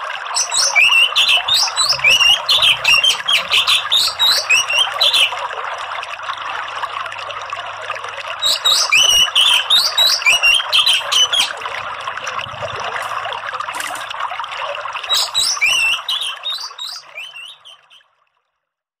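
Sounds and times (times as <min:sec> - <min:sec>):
running water: 0:00.0 - 0:18.4
thrush chirping calls: 0:00.3 - 0:05.4, 0:08.4 - 0:11.6, 0:15.0 - 0:18.0.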